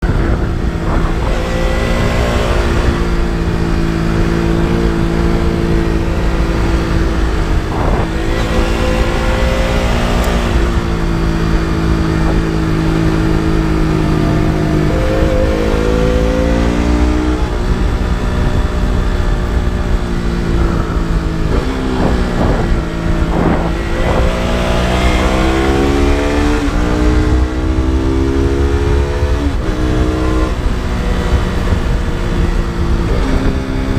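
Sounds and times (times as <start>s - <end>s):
motorcycle engine revving: 0.0s - 33.9s
wind and road noise: 0.0s - 33.9s.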